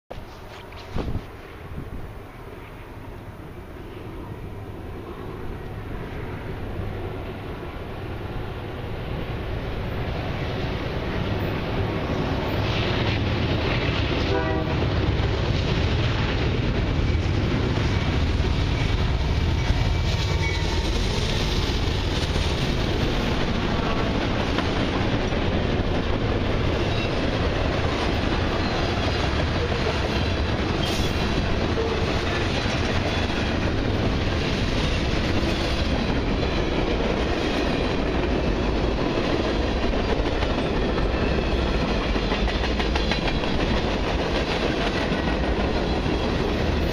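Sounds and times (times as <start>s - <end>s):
diesel locomotive rumbling: 0.1s - 46.9s
train wheels clattering on rails: 8.0s - 46.9s.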